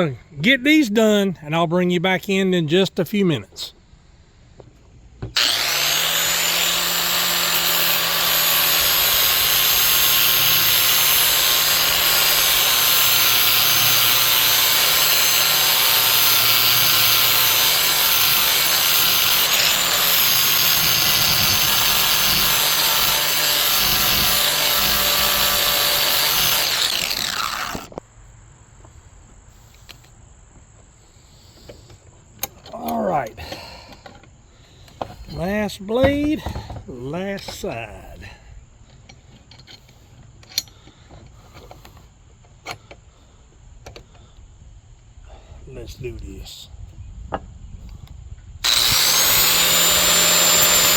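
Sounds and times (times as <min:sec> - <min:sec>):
angle grinder grinding metal: 0:05.3 - 0:28.0, 0:48.6 - 0:50.9.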